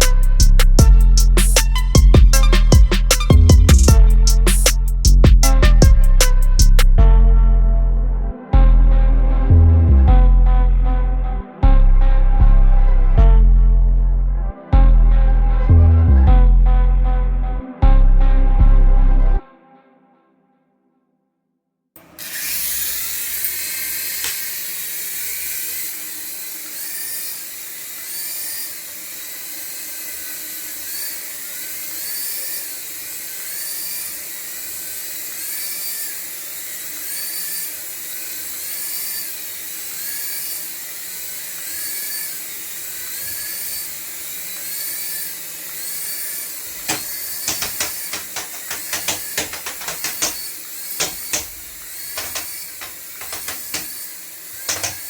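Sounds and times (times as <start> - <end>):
toy electric motor whine: 22.0 - 55.0
sharp clicks and knocks: 46.8 - 55.0.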